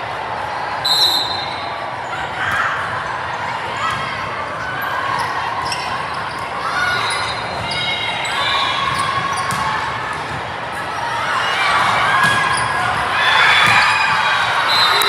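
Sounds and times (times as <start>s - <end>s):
murmur of voices: 0.0s - 15.0s
sneakers squeaking on court floor: 5.1s - 10.5s, 11.7s - 15.0s
ball hits and bounces: 8.9s - 10.5s, 11.8s - 12.7s, 13.6s - 14.2s.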